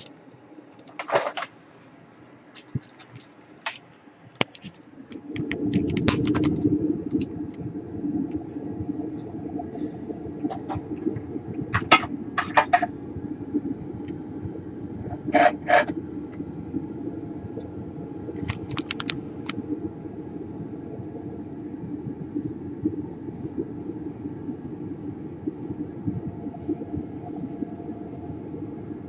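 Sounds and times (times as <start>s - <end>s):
steady low hum: 0.0s - 29.0s
sharp clicks and scrapes: 2.6s - 7.3s, 18.4s - 19.6s.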